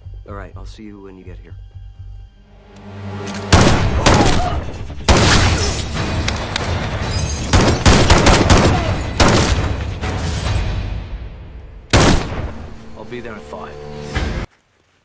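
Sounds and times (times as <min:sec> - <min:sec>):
rapid gunfire with echoes: 0:07.5 - 0:10.0.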